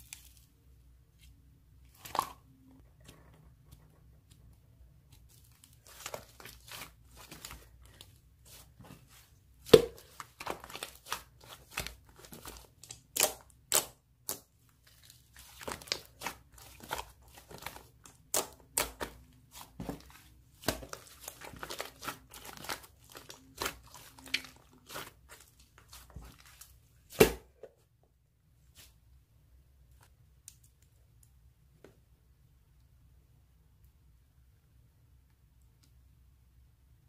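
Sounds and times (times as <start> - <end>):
slime crackling and popping: 9.6 - 14.5, 15.4 - 27.4.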